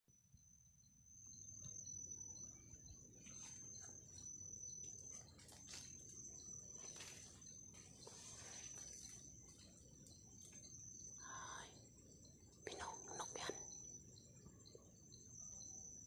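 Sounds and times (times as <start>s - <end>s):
high-pitched insect trill: 0.1s - 16.0s.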